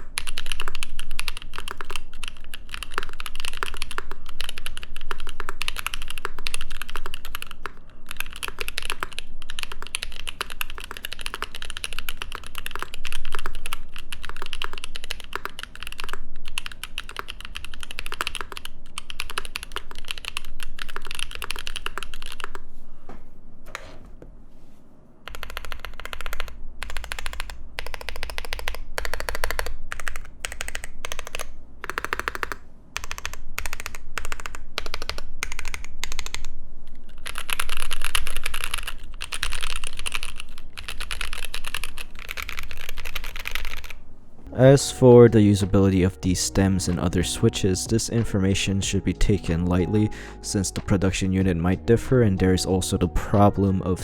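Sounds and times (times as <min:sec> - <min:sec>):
mechanical keyboard typing: 0:00.0 - 0:22.6, 0:25.3 - 0:44.0.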